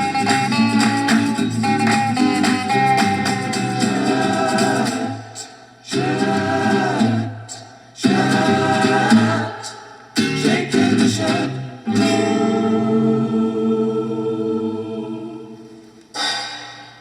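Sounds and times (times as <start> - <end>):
instrumental music: 0.0 - 5.2
group of voices singing harmonies: 0.0 - 17.0.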